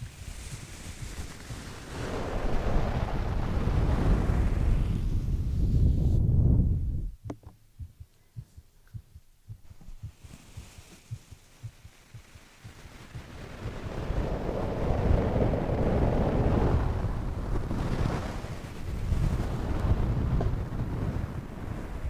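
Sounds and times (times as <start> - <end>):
heartbeat thumps: 0.0 - 2.1, 6.2 - 15.5.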